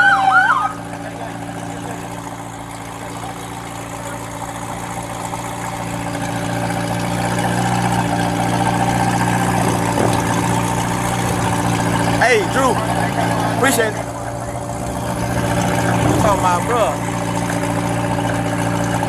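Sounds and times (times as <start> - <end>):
siren: 0.0 - 1.0
vehicle engine idling: 0.0 - 19.0.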